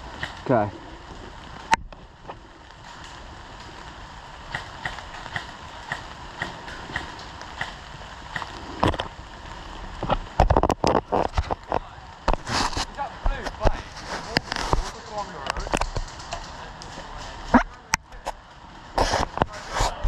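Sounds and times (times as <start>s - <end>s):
footsteps on hard ground: 10.0s - 18.4s.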